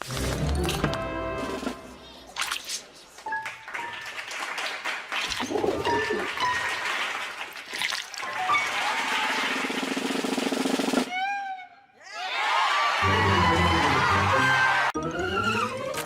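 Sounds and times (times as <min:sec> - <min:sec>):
cartoon chase music: 0:13.0 - 0:15.9.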